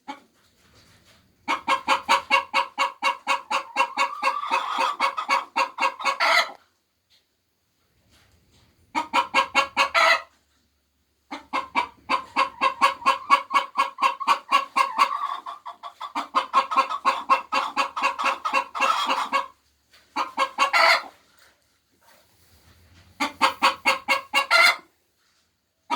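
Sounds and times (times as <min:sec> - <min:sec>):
hen cackling: 0:01.4 - 0:06.6, 0:08.9 - 0:10.3, 0:11.3 - 0:19.6, 0:20.2 - 0:21.2, 0:23.2 - 0:24.9.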